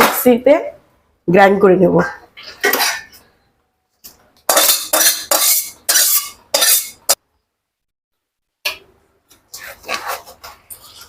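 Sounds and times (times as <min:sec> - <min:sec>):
spoon scraping cooking pot: 0:04.5 - 0:07.2.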